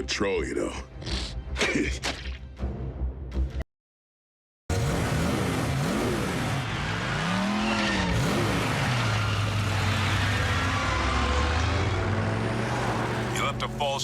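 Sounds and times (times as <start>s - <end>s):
vehicle engine revving: 4.7s - 13.8s.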